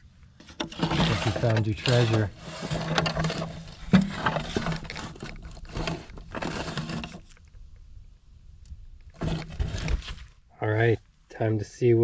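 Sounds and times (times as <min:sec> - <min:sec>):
metal case rustling and scraping: 0:00.3 - 0:07.6, 0:09.1 - 0:10.5.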